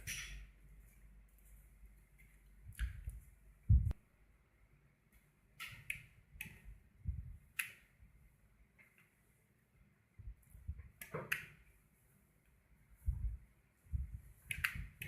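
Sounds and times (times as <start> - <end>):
clicks and taps of handling wiring: 10.7 - 11.7, 14.4 - 15.0.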